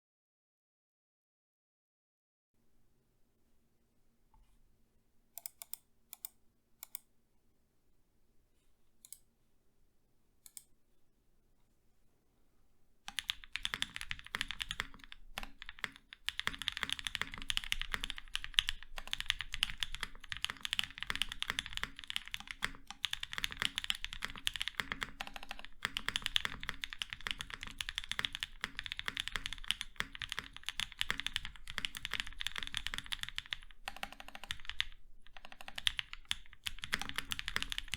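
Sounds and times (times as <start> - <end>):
mechanical keyboard typing: 5.4 - 7.0, 13.1 - 37.9.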